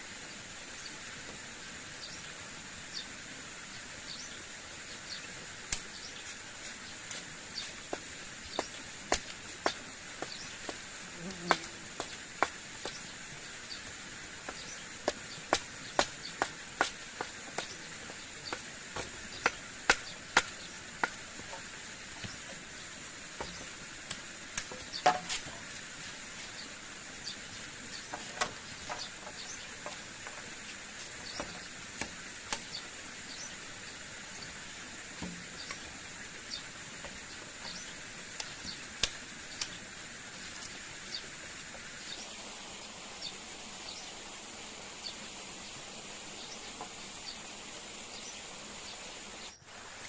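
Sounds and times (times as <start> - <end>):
high insect drone: 5.9 - 40.2
tool knocking on wood: 14.5 - 22.4, 24.6 - 25.6.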